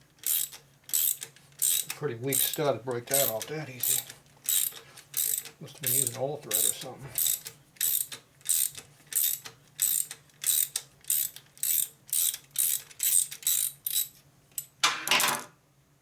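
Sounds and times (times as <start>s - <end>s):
ratchet wrench clicking: 0.2s - 14.7s.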